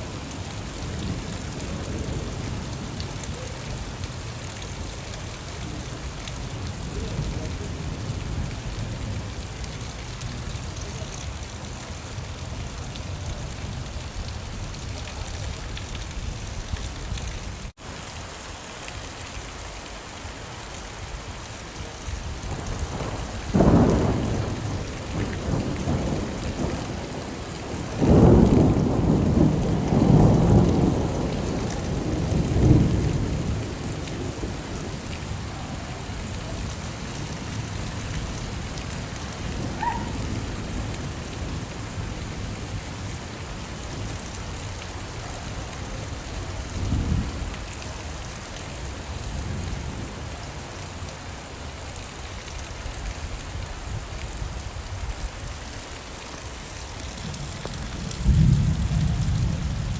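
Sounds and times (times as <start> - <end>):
steady rain: 0.0 - 59.9
thunder clap and rumble: 22.2 - 42.8, 45.4 - 47.6, 57.2 - 59.9.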